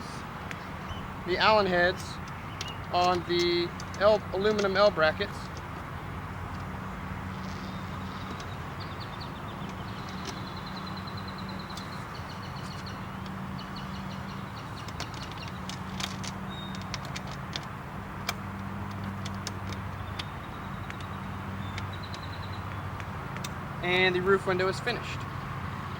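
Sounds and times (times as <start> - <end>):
sharp clicks: 2.1 - 5.9, 7.4 - 23.6.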